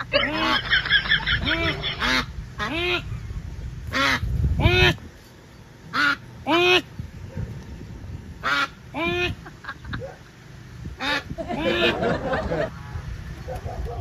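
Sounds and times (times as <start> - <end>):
goose honking: 0.0 - 3.1, 3.9 - 5.0, 5.9 - 6.9, 8.4 - 9.4, 11.0 - 12.0.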